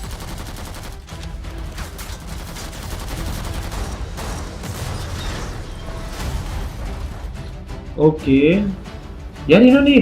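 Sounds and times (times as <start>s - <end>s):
rapid gunfire: 0.0s - 6.6s.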